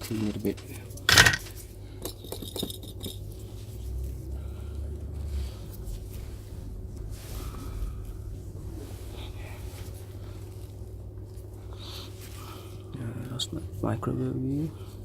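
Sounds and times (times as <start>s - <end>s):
steady low hum: 0.0s - 15.0s
small tools clinking on bench: 1.0s - 3.2s.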